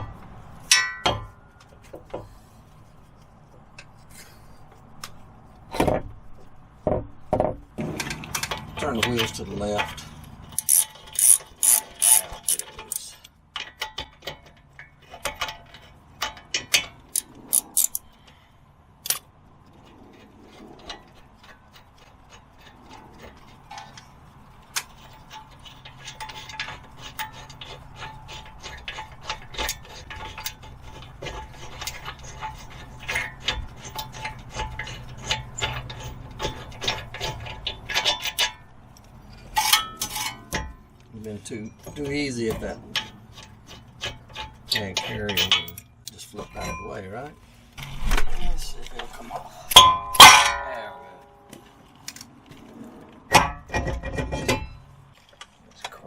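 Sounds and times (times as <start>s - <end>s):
metal tools clinking: 8.0s - 18.2s, 21.1s - 47.4s
ratchet clicking: 10.6s - 13.1s, 17.1s - 18.1s.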